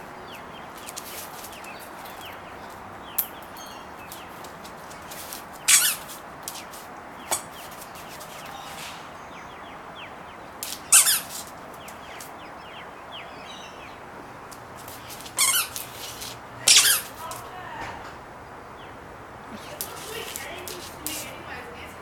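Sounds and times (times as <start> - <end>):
squeaky dog toy squeaking: 5.7 - 6.1, 10.9 - 11.4, 15.4 - 15.9, 16.6 - 17.2.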